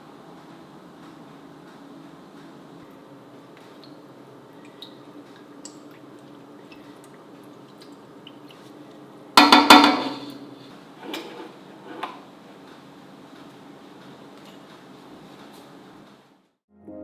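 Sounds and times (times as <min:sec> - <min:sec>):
low steady hum: 0:00.0 - 0:12.4
small water drips: 0:02.8 - 0:09.2.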